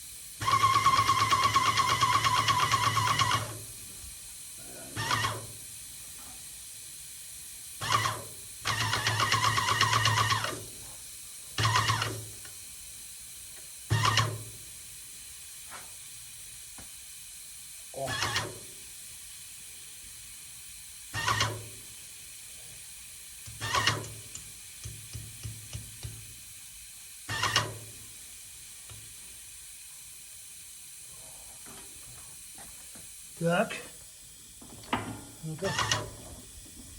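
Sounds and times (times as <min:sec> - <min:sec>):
paint sprayer pump running: 0:00.0 - 0:12.8, 0:13.4 - 0:16.0, 0:17.9 - 0:19.6, 0:21.0 - 0:36.9.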